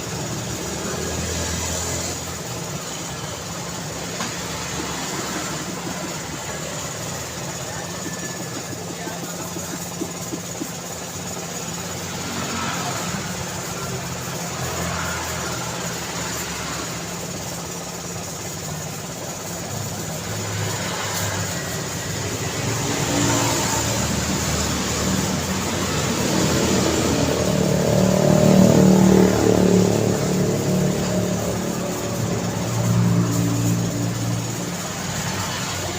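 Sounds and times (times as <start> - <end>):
road traffic passing: 0.0 - 35.9
vehicle engine passing close: 0.0 - 35.9.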